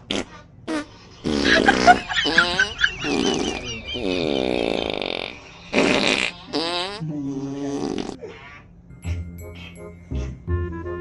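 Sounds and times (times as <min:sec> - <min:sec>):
fart sounds: 0:00.0 - 0:08.2.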